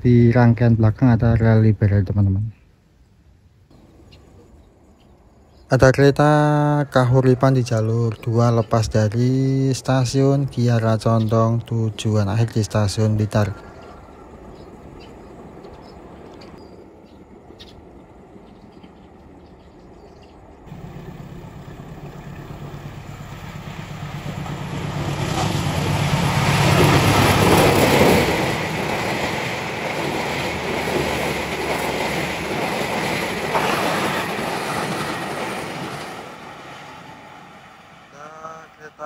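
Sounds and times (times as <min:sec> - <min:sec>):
locomotive engine drone: 0:03.7 - 0:39.0
train wheels clattering on track: 0:13.5 - 0:36.7.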